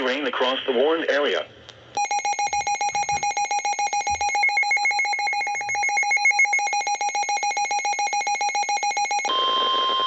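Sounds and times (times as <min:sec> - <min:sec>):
electronic emergency alert tone: 0:02.0 - 0:10.0.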